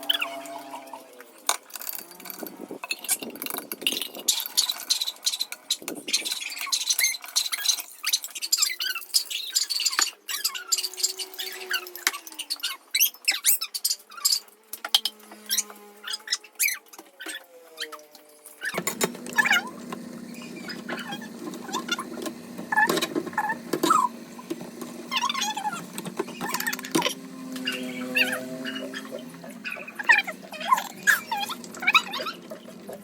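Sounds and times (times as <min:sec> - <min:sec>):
kitchen utensils clinking: 0:00.0 - 0:15.7, 0:18.6 - 0:33.0
faint squeaks: 0:04.3 - 0:18.8.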